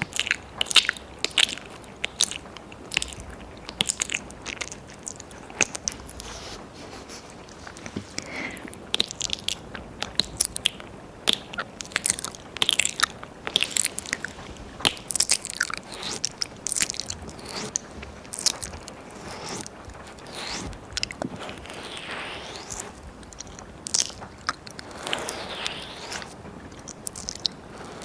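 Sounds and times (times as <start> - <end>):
wet tongue licking: 0.0 - 6.6, 7.4 - 28.0.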